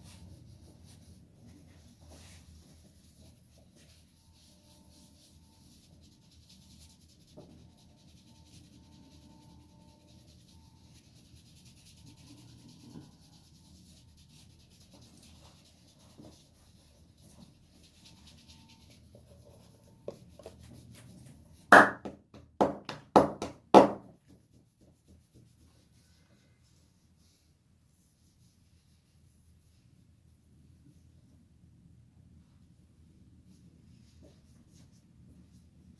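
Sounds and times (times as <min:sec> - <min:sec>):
loud hand slaps: 0:21.8 - 0:22.1.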